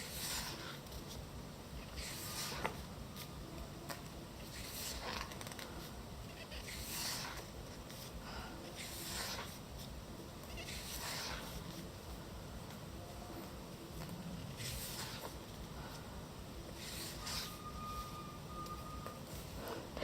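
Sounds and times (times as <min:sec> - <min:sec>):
magazine pages turning: 0:02.0 - 0:05.8.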